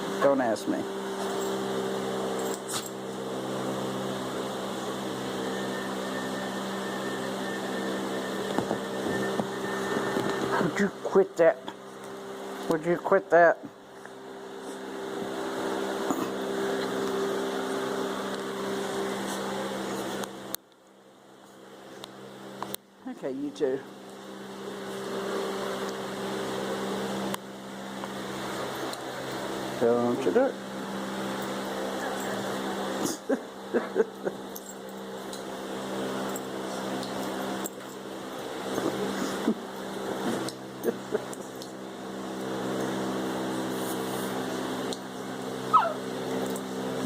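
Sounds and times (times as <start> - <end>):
steady mechanical hum: 0.0 - 47.0
puppies yelping: 45.7 - 46.1.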